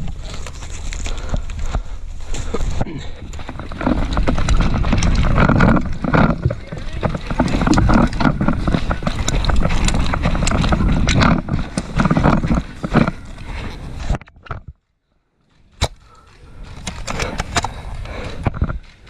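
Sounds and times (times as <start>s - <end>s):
rustling and knocking: 3.4s - 14.8s.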